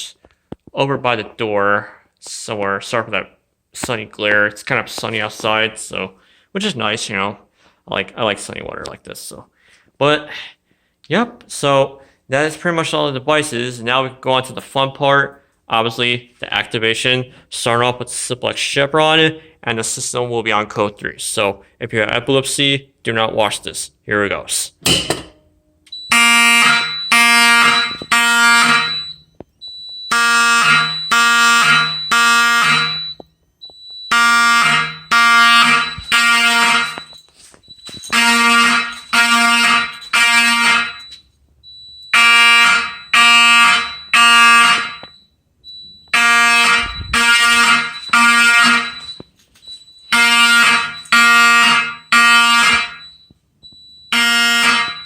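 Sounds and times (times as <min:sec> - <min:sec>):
fire alarm horn pulses: 0:25.9 - 0:55.0.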